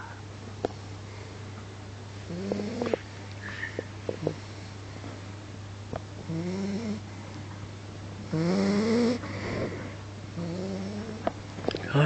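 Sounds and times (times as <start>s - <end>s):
steady low hum: 0.0s - 12.0s
pet snoring: 2.3s - 3.1s, 6.2s - 7.0s, 8.2s - 11.3s.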